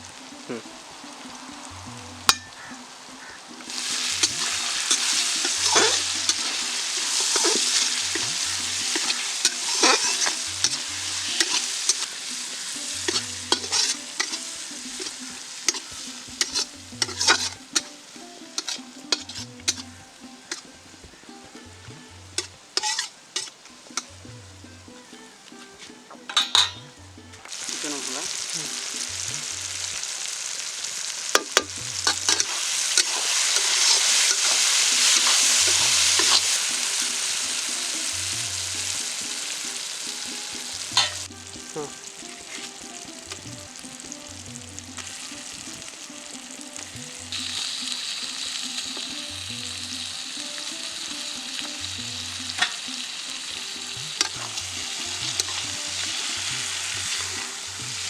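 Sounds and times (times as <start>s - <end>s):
chicken sizzling in oil: 0.0s - 58.0s
utensil clicking against pan: 13.1s - 14.4s, 15.0s - 17.9s, 18.6s - 19.9s, 54.2s - 55.8s.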